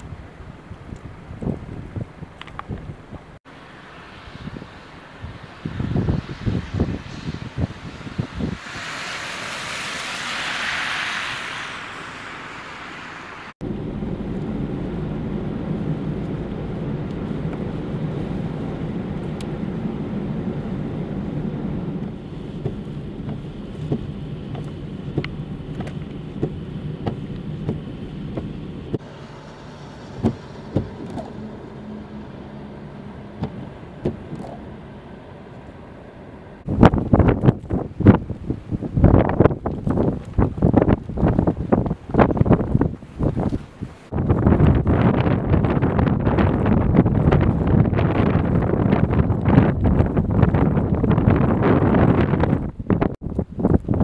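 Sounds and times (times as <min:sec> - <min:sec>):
vehicle low drone: 0:03.2 - 0:37.4
rushing hiss: 0:08.4 - 0:13.6.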